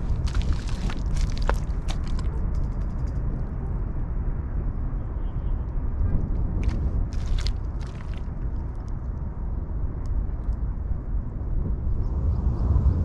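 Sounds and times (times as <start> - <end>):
scratchy rustles: 0.0 - 2.4, 6.6 - 8.3
wind buffeting microphone: 0.0 - 4.8, 5.8 - 13.0.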